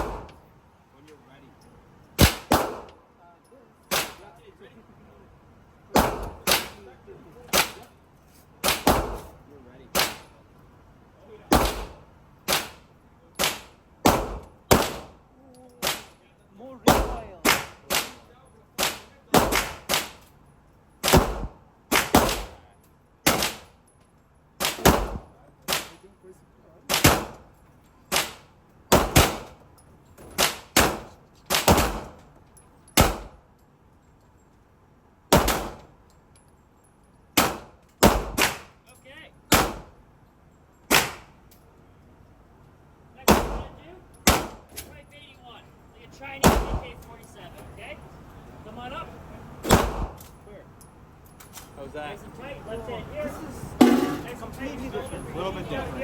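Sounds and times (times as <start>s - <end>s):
handgun shots: 2.2s - 3.0s, 3.9s - 4.2s, 5.9s - 6.8s, 7.5s - 7.9s, 8.6s - 9.4s, 10.0s - 10.3s, 11.5s - 12.8s, 13.4s - 15.2s, 15.8s - 16.2s, 16.9s - 18.2s, 18.8s - 20.3s, 21.0s - 22.6s, 23.2s - 23.7s, 24.6s - 25.9s, 26.9s - 27.4s, 28.1s - 29.6s, 30.3s - 32.2s, 33.0s - 33.4s, 35.3s - 35.9s, 37.4s - 38.7s, 39.5s - 40.0s, 40.9s - 41.4s, 43.3s - 44.9s, 46.4s - 46.9s, 49.6s - 50.3s.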